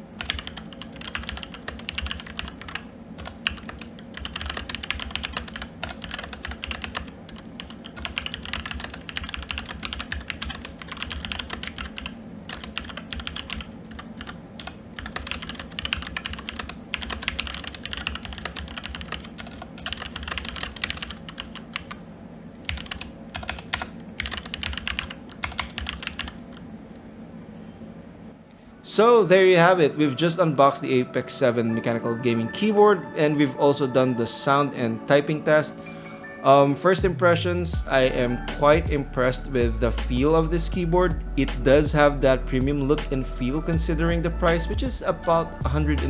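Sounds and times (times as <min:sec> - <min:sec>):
mechanical keyboard typing: 0:00.2 - 0:22.0, 0:22.7 - 0:26.6.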